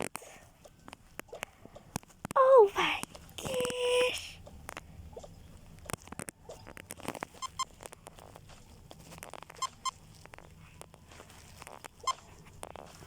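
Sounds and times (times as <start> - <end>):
checkout scanner beeps: 7.4 - 7.7, 9.6 - 10.0.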